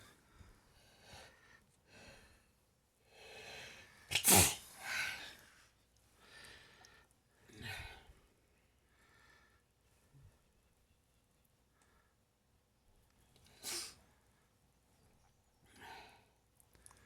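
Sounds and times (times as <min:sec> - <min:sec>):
person sneezing: 0:04.1 - 0:04.8, 0:13.6 - 0:14.0
person breathing: 0:08.9 - 0:09.6.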